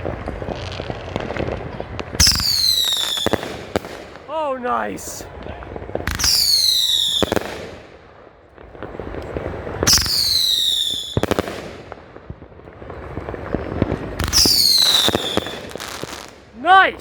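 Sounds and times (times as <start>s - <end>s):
sharp firework bangs: 0.0s - 4.3s, 5.8s - 8.0s, 8.7s - 12.4s, 13.1s - 16.4s
firework crackling and popping: 0.0s - 17.0s
whistling firework shot: 2.2s - 4.0s, 6.1s - 7.6s, 9.8s - 11.6s, 14.2s - 16.0s.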